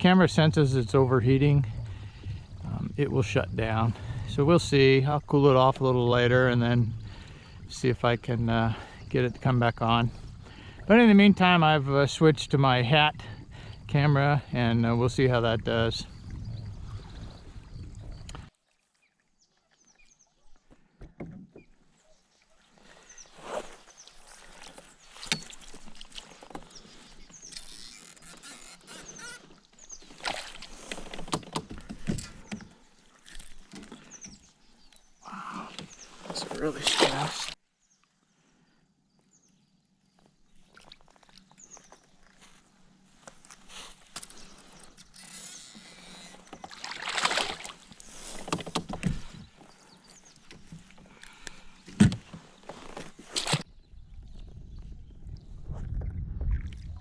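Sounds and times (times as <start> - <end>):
water splashing: 29.4 - 34.4, 35.2 - 37.6, 43.4 - 49.6.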